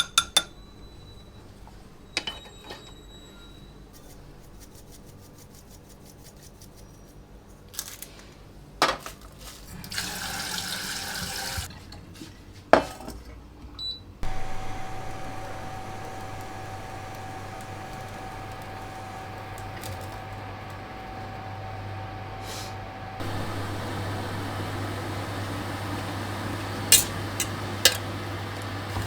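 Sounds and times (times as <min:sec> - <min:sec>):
tap running: 0:09.9 - 0:11.7, 0:14.2 - 0:29.0
small appliance humming: 0:14.2 - 0:29.0.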